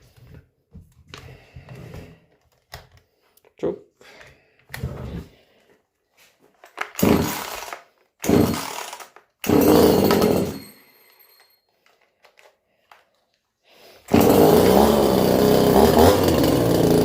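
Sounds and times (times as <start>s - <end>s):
chainsaw engine firing: 7.0s - 10.6s, 14.1s - 17.0s
recoil starter pulls: 14.1s - 17.0s.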